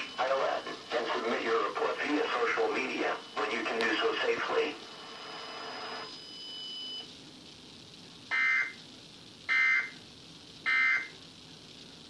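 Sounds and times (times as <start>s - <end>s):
digital data tone bursts: 0.0s - 7.1s, 8.3s - 8.8s.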